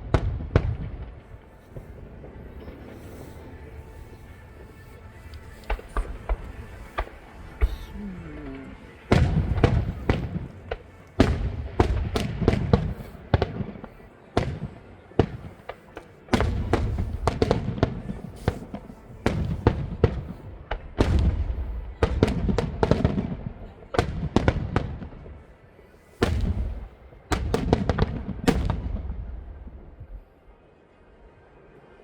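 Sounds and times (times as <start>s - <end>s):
fireworks bangs and crackles: 0.0s - 30.3s.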